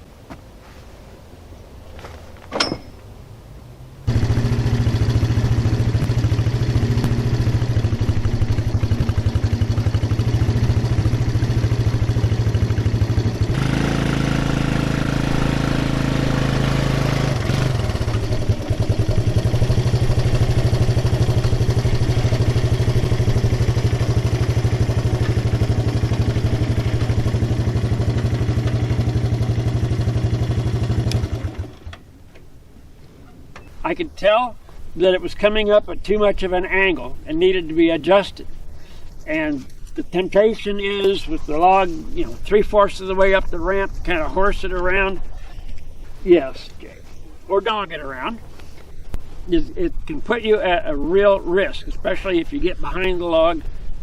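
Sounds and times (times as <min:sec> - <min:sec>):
small vehicle engine running: 0:04.1 - 0:32.0.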